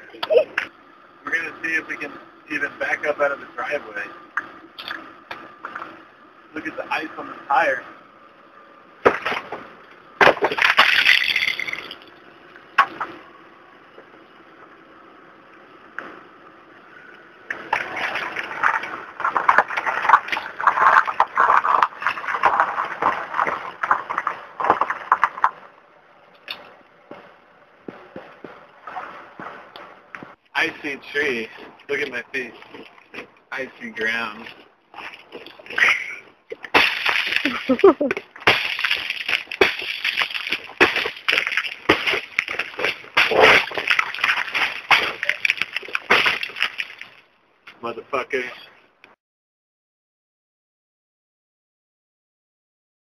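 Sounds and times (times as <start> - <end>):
footsteps crunching on ice: 17.8 - 25.6, 36.7 - 47.2.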